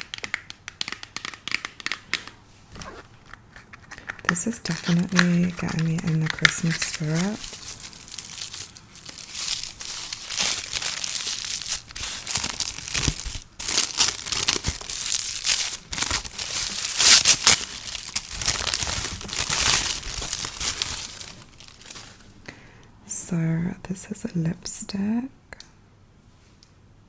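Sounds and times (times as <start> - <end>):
packaging crinkling and tearing: 0.0 - 22.5.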